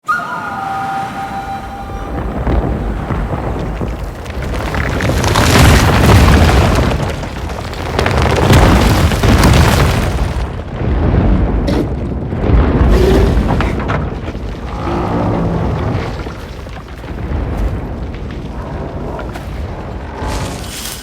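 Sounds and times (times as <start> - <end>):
deep cinematic booms: 1.6 - 20.4.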